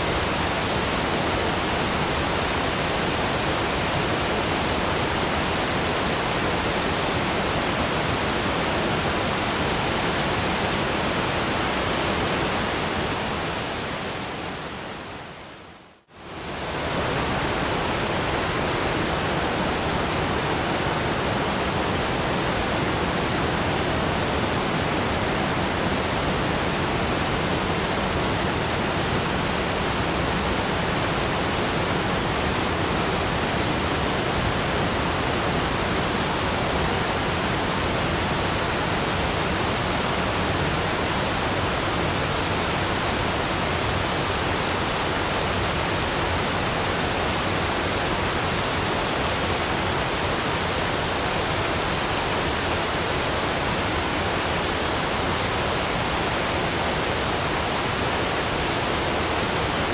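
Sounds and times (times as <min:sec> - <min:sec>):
rushing waterfall: 0:00.0 - 0:59.9.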